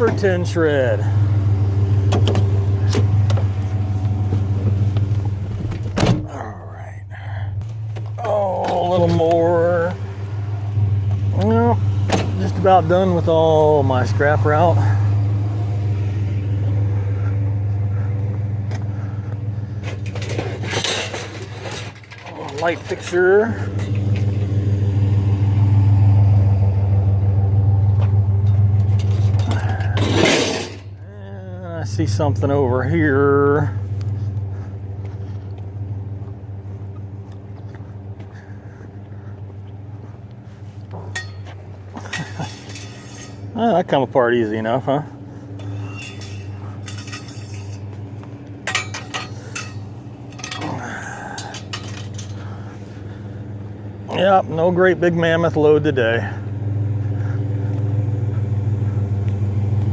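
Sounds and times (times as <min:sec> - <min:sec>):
truck engine running: 0:00.0 - 0:59.9
scrap metal clinking and clattering: 0:19.8 - 0:24.4, 0:28.5 - 0:31.0, 0:41.0 - 0:43.7, 0:45.5 - 0:52.7.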